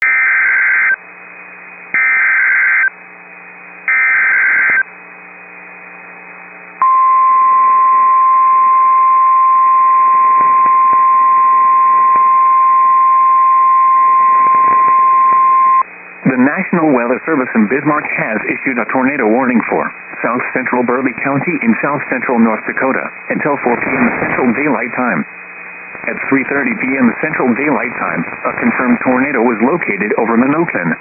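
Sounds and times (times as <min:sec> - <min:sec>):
screechy digital data bursts: 0:03.9 - 0:04.8
steady warning alarm tone: 0:03.9 - 0:04.8, 0:06.8 - 0:15.8
faint radio hiss: 0:14.4 - 0:31.0.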